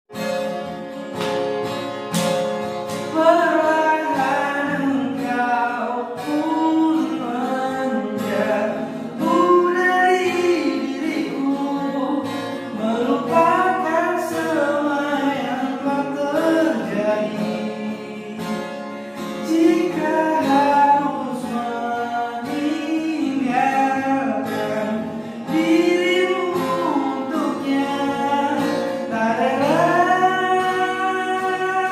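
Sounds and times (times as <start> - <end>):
guitar strummed and plucked: 0.1 - 31.9
person singing slow song: 3.0 - 31.9.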